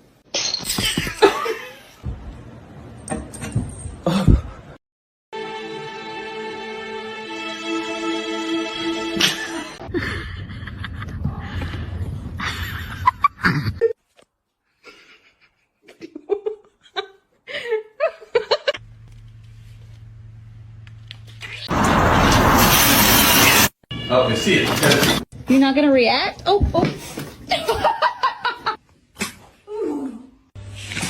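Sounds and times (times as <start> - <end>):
music: 5.4 - 9.8
people laughing: 27.5 - 28.8.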